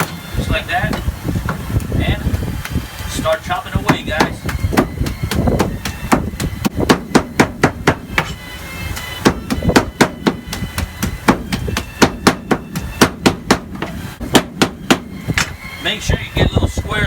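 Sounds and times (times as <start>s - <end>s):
cleaver chopping on wooden board: 3.8s - 8.4s, 9.0s - 15.6s.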